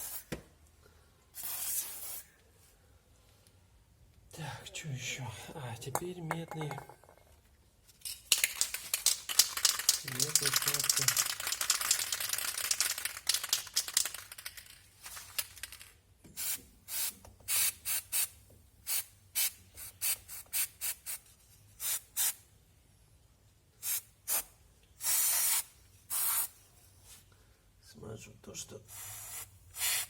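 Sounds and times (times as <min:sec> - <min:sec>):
aerosol spray hissing: 0:01.4 - 0:02.3, 0:28.9 - 0:30.0.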